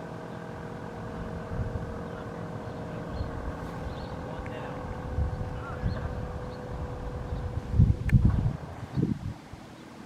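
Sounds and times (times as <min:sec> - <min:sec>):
wind buffeting microphone: 0:00.0 - 0:09.7.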